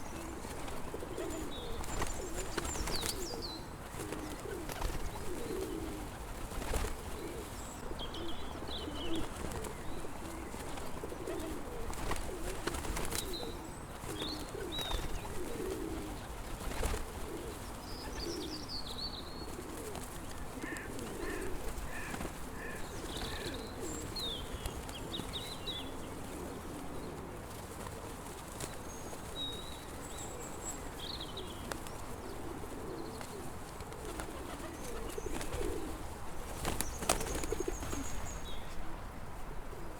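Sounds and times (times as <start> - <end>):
small birds chirping: 0.0 - 27.2, 34.0 - 36.0, 36.6 - 38.8
pigeons cooing: 0.0 - 28.0, 28.6 - 38.4.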